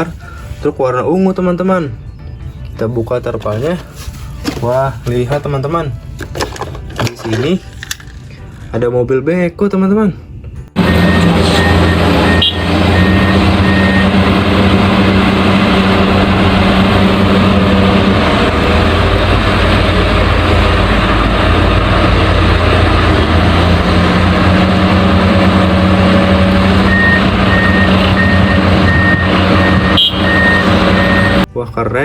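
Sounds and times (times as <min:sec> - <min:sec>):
heavy vehicle engine humming: 0:10.2 - 0:31.5
reversing alarm beeping: 0:10.8 - 0:15.3, 0:26.8 - 0:31.5.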